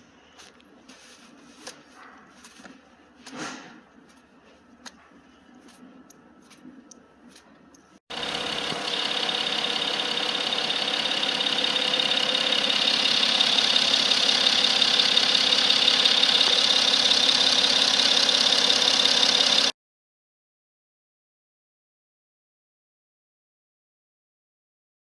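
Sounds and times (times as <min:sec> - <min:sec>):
diesel engine running: 0:08.1 - 0:19.7.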